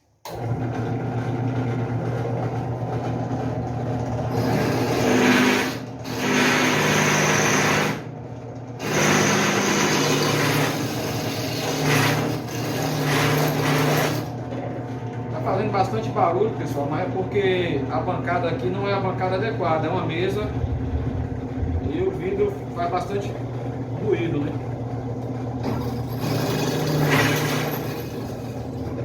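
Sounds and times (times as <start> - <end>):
drill press motor hum: 4.0 - 8.1, 8.8 - 14.4
drill bit cutting steel: 4.4 - 8.0, 8.8 - 14.3.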